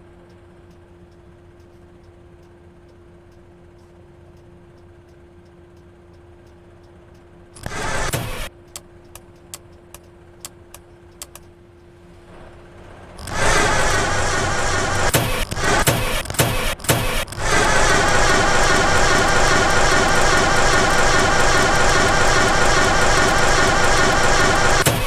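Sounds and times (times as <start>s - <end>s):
car engine running: 7.6s - 11.5s, 12.1s - 25.0s
car starter clicks: 7.6s - 11.5s, 13.2s - 25.0s.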